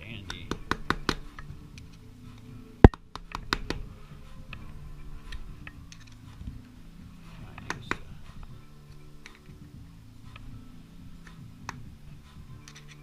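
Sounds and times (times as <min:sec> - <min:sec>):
steady low hum: 0:01.2 - 0:13.0
metal tools clicking and tapping: 0:05.3 - 0:06.2, 0:12.6 - 0:13.0.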